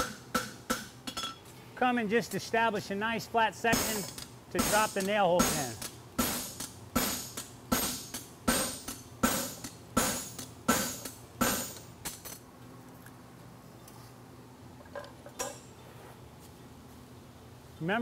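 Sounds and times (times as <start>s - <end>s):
hammer striking steel on anvil: 0.0s - 1.4s, 3.7s - 12.2s.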